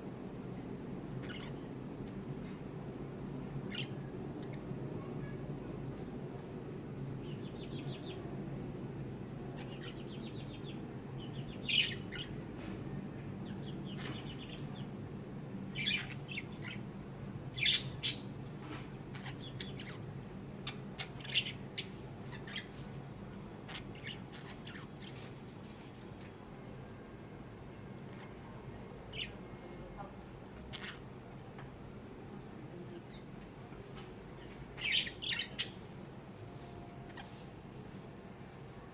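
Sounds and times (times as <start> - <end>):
steady low hum: 0.0 - 38.9
lovebirds squawking and chirping: 1.2 - 1.7, 11.3 - 12.4, 15.8 - 16.8, 20.6 - 22.8, 23.7 - 25.3, 30.7 - 31.1, 34.8 - 35.8
birds chattering rapidly: 1.2 - 1.8, 9.5 - 12.4, 13.4 - 15.0, 15.8 - 16.9, 17.5 - 22.8, 23.6 - 25.3, 30.7 - 31.2, 34.4 - 35.9.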